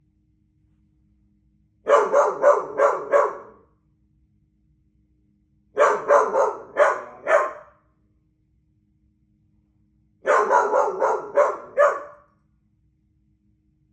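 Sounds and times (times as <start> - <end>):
dog barking: 1.9 - 3.7, 5.8 - 7.8, 10.2 - 12.4.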